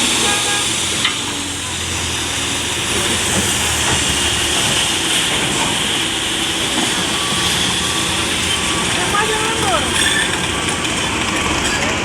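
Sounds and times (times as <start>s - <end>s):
heavy diesel machinery running: 0.0s - 12.0s
reversing alarm beeping: 6.0s - 10.8s.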